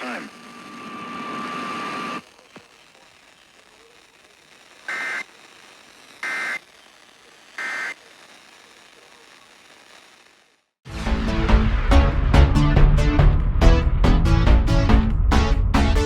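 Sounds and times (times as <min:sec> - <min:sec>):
faint radio hiss: 0:00.0 - 0:10.8
screeching digital data bursts: 0:04.9 - 0:08.0.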